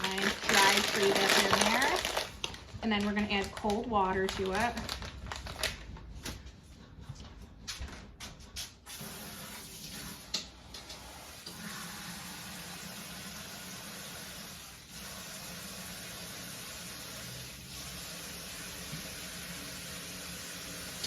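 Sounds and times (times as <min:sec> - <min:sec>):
water running from tap: 0:08.9 - 0:21.0.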